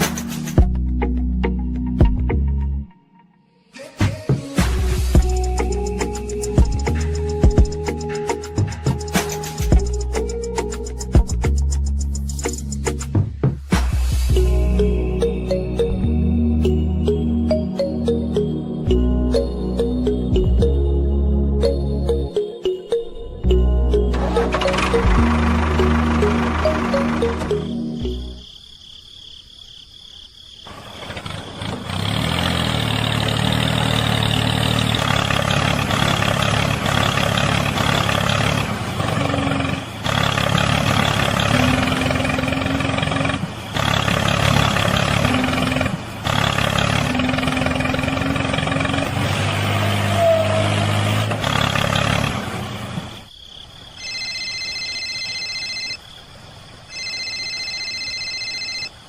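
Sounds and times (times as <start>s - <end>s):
truck engine running: 4.8s - 13.1s, 23.5s - 28.4s, 30.7s - 53.3s
electronic ringing beeps: 22.1s - 28.4s, 54.0s - 56.0s, 56.9s - 59.0s.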